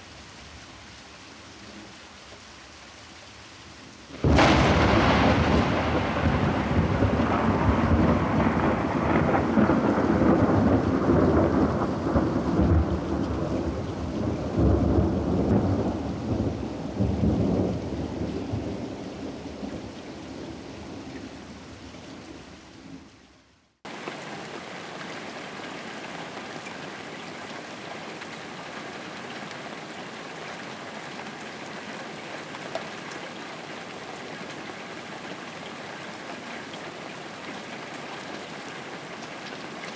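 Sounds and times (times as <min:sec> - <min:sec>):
heavy rain: 0:00.0 - 0:23.2, 0:23.9 - 0:39.9
thunder rumbling: 0:04.2 - 0:19.0.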